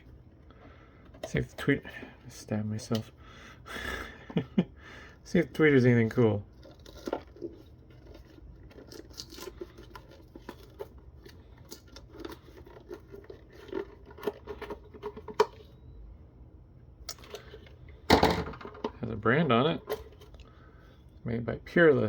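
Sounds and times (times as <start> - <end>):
small plastic clicks and scrapes: 6.6 - 15.7.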